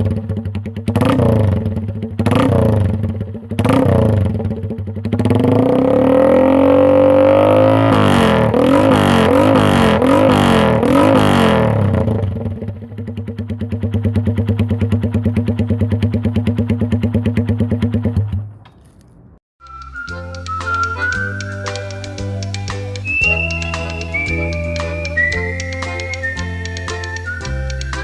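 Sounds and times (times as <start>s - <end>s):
motorcycle engine revving and idling: 0.0s - 19.0s.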